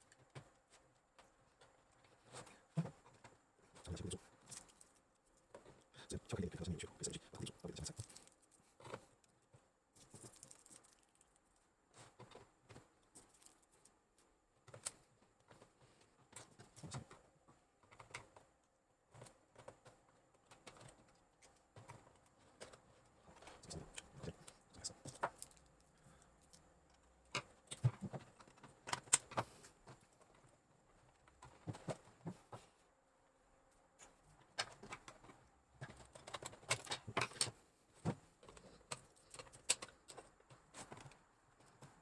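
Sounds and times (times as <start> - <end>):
plastic clicks and clacks: 26.5 - 30.4, 34.0 - 42.0.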